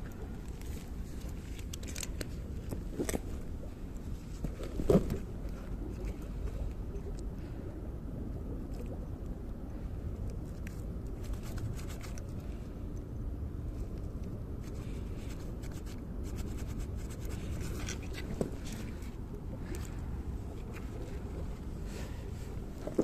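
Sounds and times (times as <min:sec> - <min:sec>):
steady low rumble: 0:00.0 - 0:23.0
scraping and clicking handling noises: 0:00.5 - 0:03.4.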